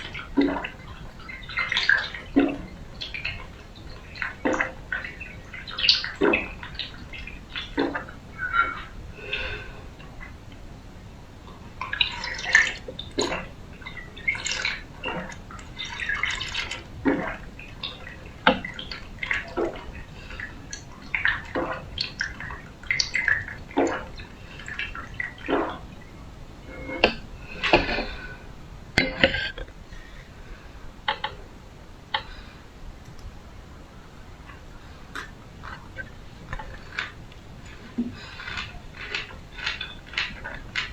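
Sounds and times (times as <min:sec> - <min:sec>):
sips and swallows of liquid: 0:26.6 - 0:29.8, 0:35.2 - 0:40.9.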